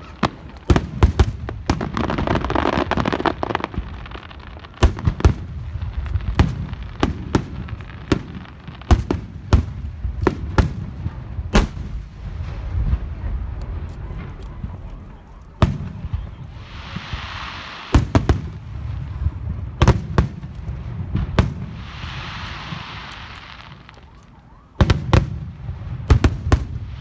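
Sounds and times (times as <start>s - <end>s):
fireworks bangs: 0.0s - 27.0s
fireworks hiss: 15.6s - 24.2s.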